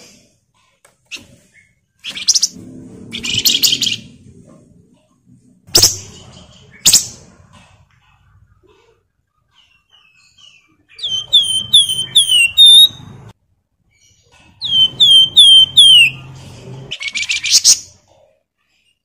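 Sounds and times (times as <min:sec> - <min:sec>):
bird whistling descending notes: 0:11.0 - 0:13.0, 0:14.6 - 0:16.2.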